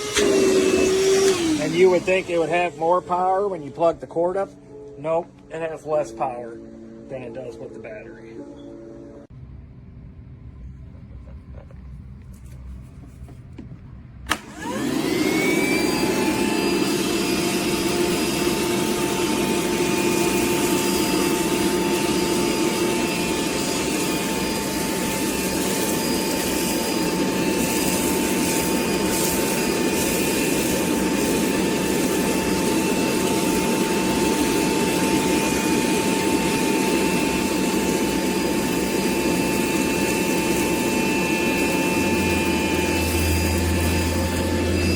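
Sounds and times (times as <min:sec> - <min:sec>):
shop vacuum motor whining: 0:00.0 - 0:09.3, 0:14.3 - 0:44.9
vacuum switch click: 0:14.3 - 0:14.8.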